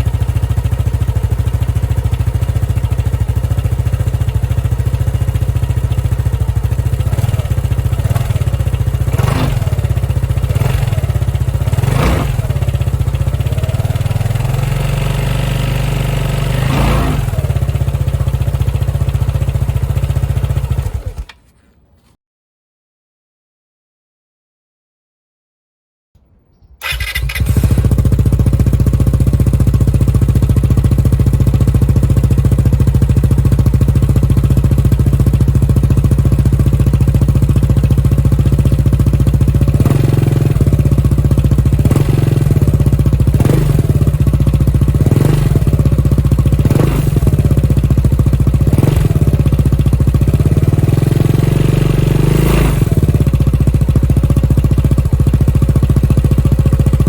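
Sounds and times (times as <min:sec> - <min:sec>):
motorcycle engine idling: 0:00.0 - 0:21.4, 0:26.8 - 0:57.0
engine throttle blips: 0:26.8 - 0:29.2.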